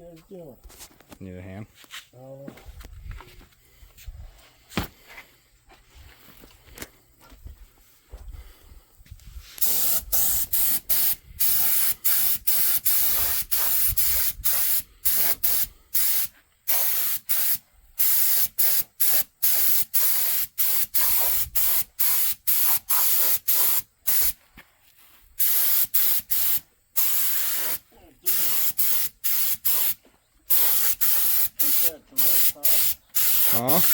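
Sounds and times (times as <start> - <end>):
aerosol spray can hissing: 9.6 - 24.4, 25.4 - 33.9.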